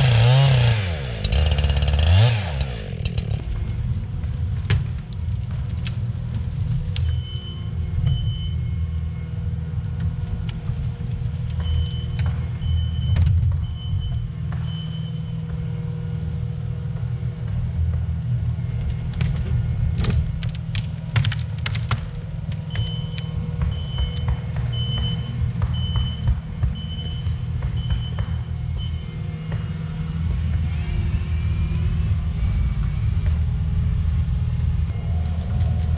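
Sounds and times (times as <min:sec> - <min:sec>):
diesel engine running: 0:00.0 - 0:35.9
sharp knocks and clatter: 0:01.1 - 0:07.4, 0:16.9 - 0:28.6
reverse alarm beeping: 0:11.6 - 0:15.4, 0:22.7 - 0:28.2.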